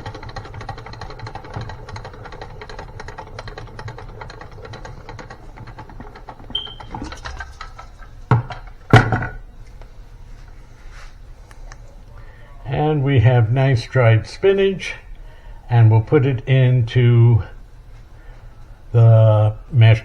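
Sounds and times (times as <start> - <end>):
salad spinner whirring and clicking: 0.0 - 8.8.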